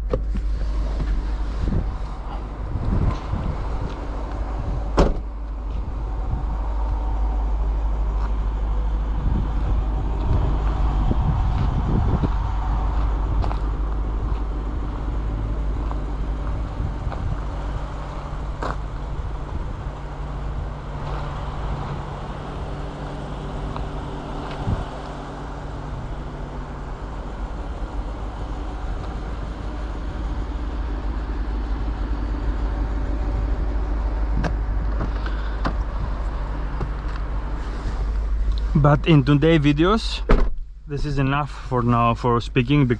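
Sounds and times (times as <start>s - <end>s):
car engine running: 0.0s - 42.9s
road noise: 0.0s - 42.9s.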